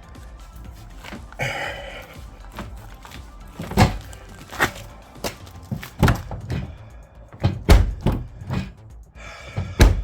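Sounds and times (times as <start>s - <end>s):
sheet metal thunks and knocks: 7.4s - 8.8s.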